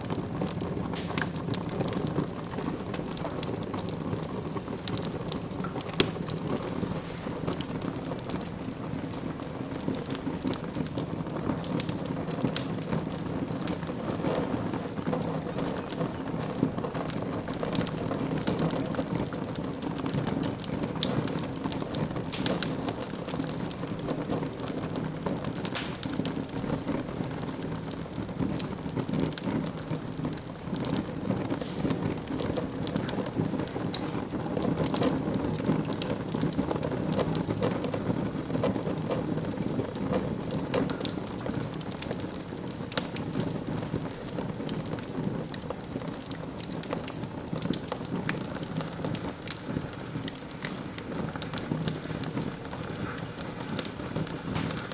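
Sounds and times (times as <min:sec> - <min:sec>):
fire crackling and popping: 0:00.0 - 0:54.9
fire rumbling: 0:00.0 - 0:54.9.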